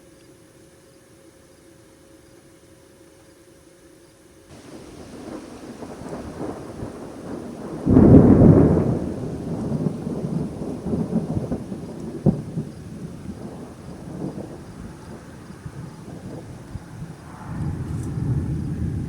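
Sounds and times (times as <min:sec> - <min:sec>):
sharp thunder crack: 0:04.5 - 0:19.0
thunder clap rumbling: 0:04.5 - 0:19.0.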